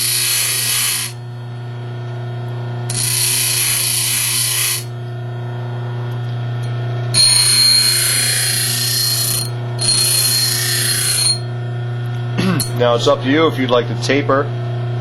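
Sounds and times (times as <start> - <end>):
blade grinding on wheel: 0.0 - 1.2, 2.9 - 4.9, 7.2 - 11.5
bench grinder motor running: 0.0 - 6.1, 7.0 - 12.9.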